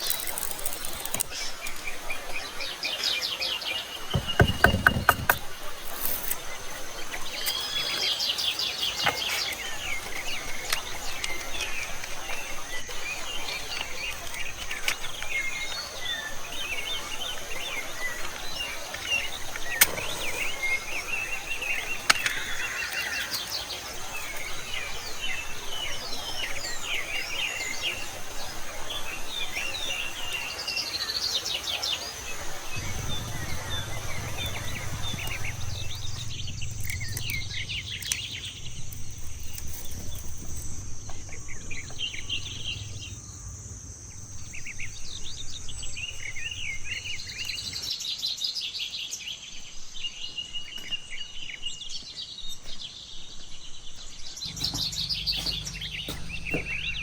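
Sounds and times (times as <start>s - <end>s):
small birds chirping: 0.0s - 57.0s
high-pitched whine: 32.4s - 45.6s
low hum: 32.4s - 46.8s, 54.4s - 57.0s.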